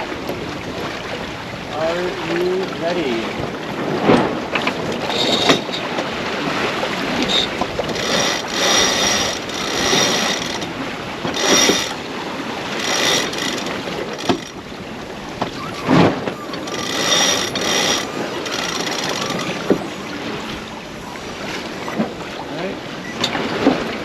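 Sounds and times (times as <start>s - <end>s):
water noise: 0.0s - 24.0s
wind: 0.0s - 24.0s
winch pawls clicking: 7.2s - 14.7s, 15.4s - 22.4s.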